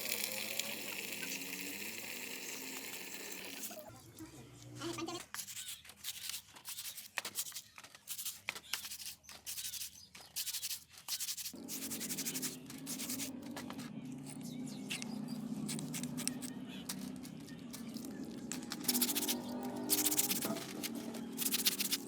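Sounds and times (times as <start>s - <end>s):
stiff brush scrubbing rusty metal: 10.5s - 13.8s, 14.9s - 22.0s.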